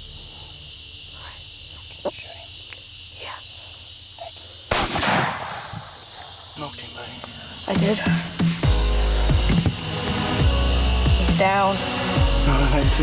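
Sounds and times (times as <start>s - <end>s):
insects chirping: 0.0s - 13.0s
loud gunshot: 4.7s - 6.0s.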